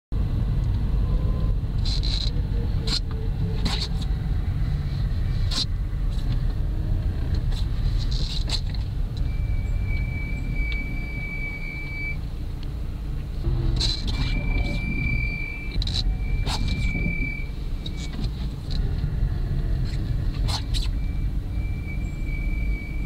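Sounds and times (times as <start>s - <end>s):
car road and engine rumble: 0.1s - 23.0s
high-pitched brake squeal: 9.2s - 12.2s, 13.4s - 18.2s, 19.8s - 23.0s.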